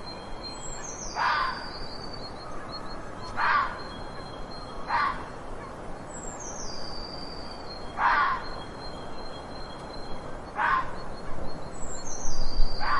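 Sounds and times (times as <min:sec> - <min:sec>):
fox barking: 0:01.2 - 0:01.6, 0:03.4 - 0:03.8, 0:04.9 - 0:05.8, 0:08.0 - 0:08.4, 0:10.6 - 0:11.0.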